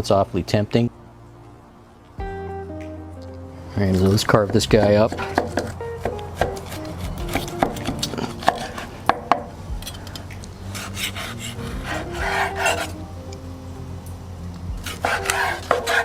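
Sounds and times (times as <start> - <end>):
knife sawing through crust: 10.8 - 12.9, 14.9 - 16.0.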